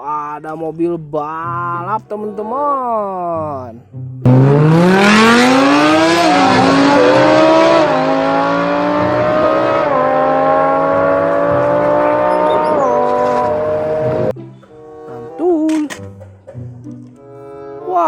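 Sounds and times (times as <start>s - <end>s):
race car engine accelerating: 4.2s - 14.3s.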